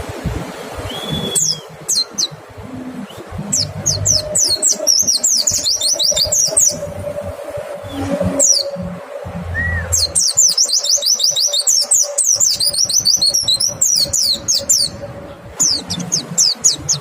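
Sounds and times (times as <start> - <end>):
bird whistling falling notes: 0.9 - 2.3, 3.6 - 15.0.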